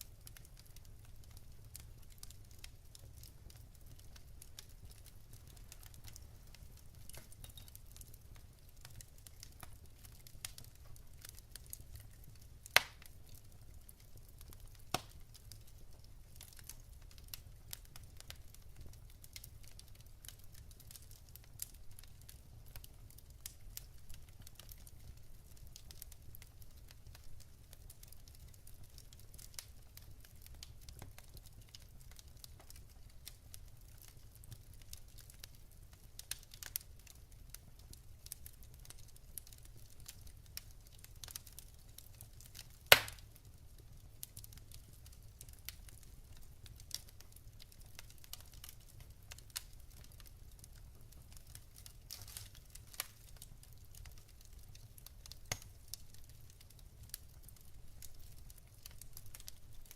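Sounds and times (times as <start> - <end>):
wood fire crackling: 0.0 - 59.9
loud sharp pop: 42.9 - 43.2.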